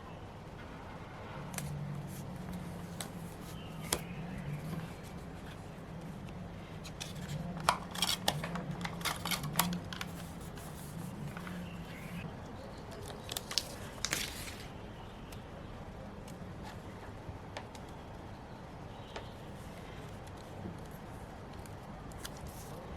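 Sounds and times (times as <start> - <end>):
scissors snipping paper: 6.8 - 11.6.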